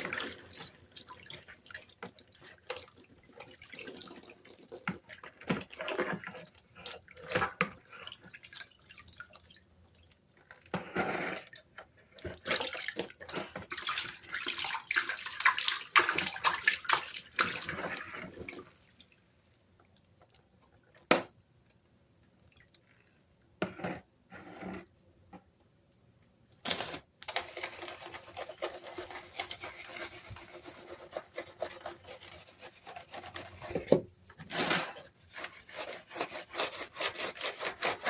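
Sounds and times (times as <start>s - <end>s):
water splashing and dripping: 0.0s - 10.1s, 12.4s - 19.2s, 22.4s - 22.8s.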